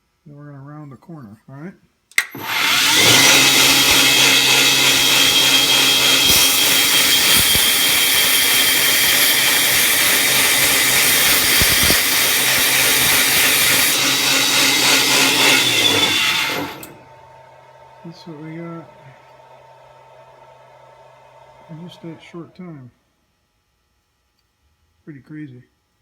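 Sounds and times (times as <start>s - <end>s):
belt grinder motor whine: 2.2s - 22.6s
abrasive belt grinding hiss: 2.4s - 17.1s.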